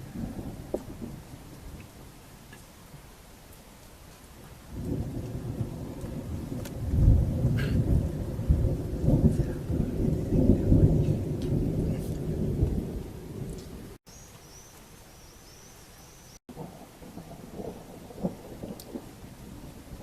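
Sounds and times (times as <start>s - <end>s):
thunder rumbling: 0.0s - 2.5s, 4.4s - 14.0s, 16.4s - 20.0s.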